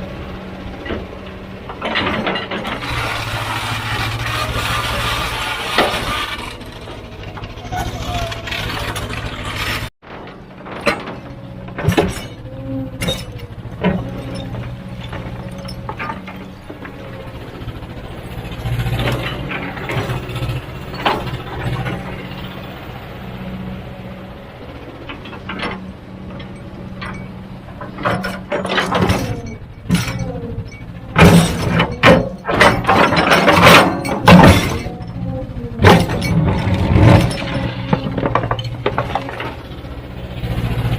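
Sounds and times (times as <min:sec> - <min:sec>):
heavy diesel machinery running: 0:00.0 - 0:40.9
rock or metal clanking: 0:25.0 - 0:39.8.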